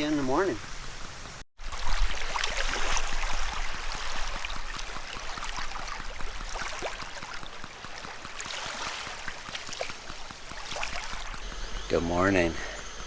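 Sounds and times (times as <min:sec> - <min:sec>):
campfire crackling and popping: 0:03.6 - 0:13.0.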